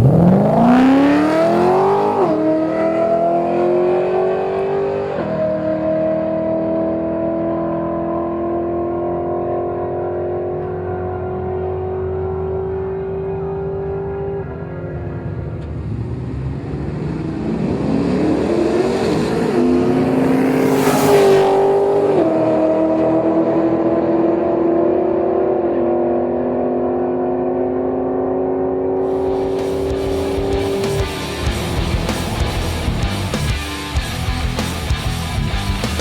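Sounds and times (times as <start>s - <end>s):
car engine accelerating: 0.0s - 36.0s
music: 29.1s - 36.0s.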